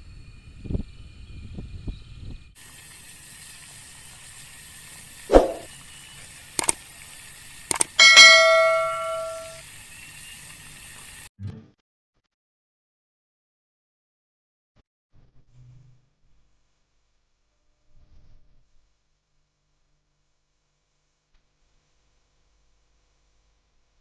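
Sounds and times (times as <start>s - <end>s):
sharp knocks: 5.3s - 5.7s, 7.7s - 9.6s
ringing metallic clang: 7.7s - 9.6s.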